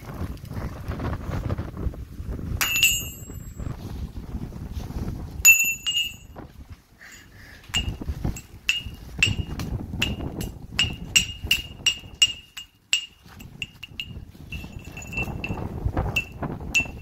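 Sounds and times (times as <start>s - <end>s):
strikes on ringing metal: 2.6s - 3.5s, 5.5s - 6.4s, 7.7s - 15.6s, 16.2s - 17.0s.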